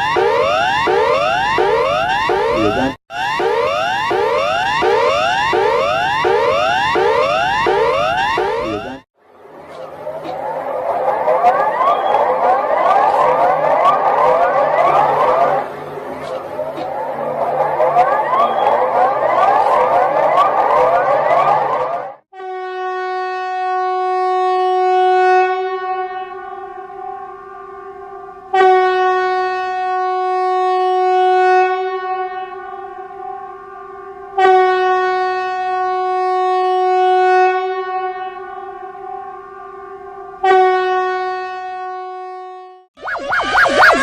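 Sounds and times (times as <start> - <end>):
buzzy emergency alert tone: 1.0 - 3.7, 7.1 - 9.0, 43.0 - 44.0.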